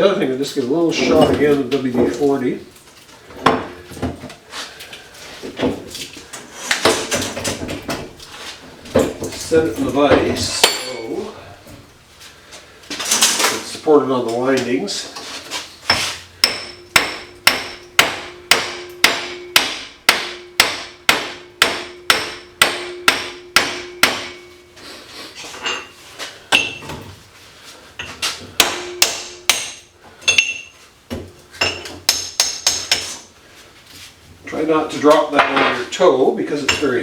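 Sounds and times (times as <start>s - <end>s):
hammer striking metal: 10.5s - 11.1s, 15.9s - 24.6s, 26.5s - 26.9s, 28.6s - 30.7s, 31.6s - 33.2s.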